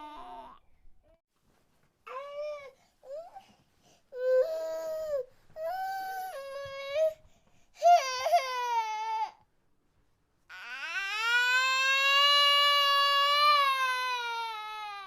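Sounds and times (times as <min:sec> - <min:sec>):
infant crying: 0:07.8 - 0:09.4, 0:10.5 - 0:15.0.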